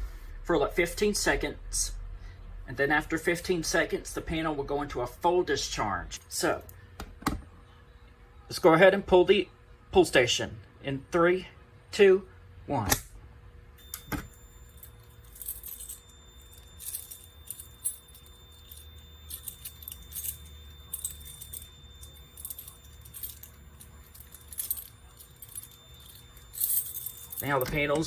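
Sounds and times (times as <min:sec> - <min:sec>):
jingling metallic rattles: 0:13.8 - 0:28.0.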